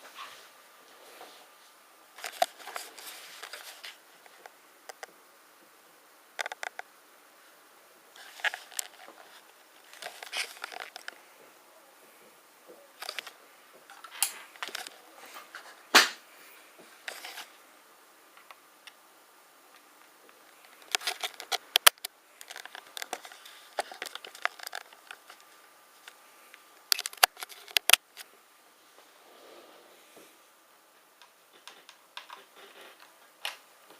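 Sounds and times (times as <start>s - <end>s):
clicks taps and scrapes of objects: 20.6s - 26.2s.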